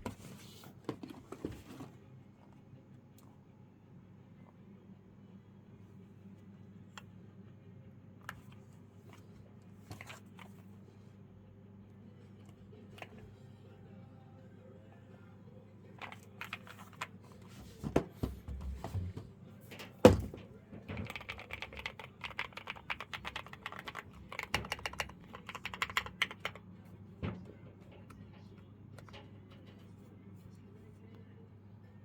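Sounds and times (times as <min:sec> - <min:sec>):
mechanical keyboard typing: 0:21.0 - 0:26.6.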